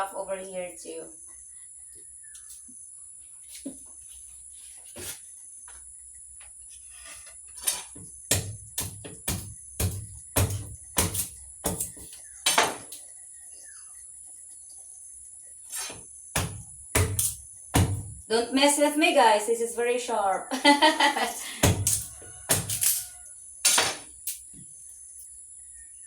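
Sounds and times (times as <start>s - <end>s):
crickets chirring: 0.0s - 26.0s
blade chopping firewood: 7.8s - 13.0s, 15.7s - 18.2s, 21.6s - 24.4s.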